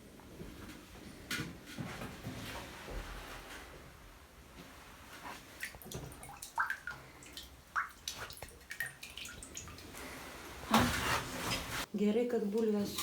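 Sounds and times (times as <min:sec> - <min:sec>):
water drips and plops: 0:05.6 - 0:10.1
water sloshing: 0:05.6 - 0:11.9.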